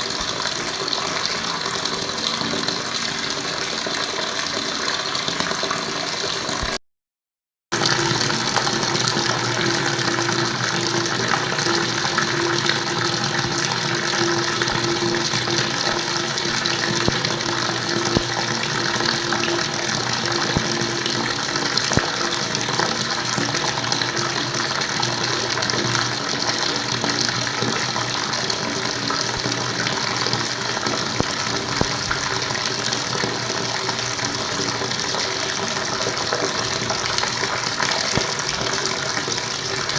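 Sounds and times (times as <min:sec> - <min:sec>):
water rushing: 0:07.8 - 0:39.9.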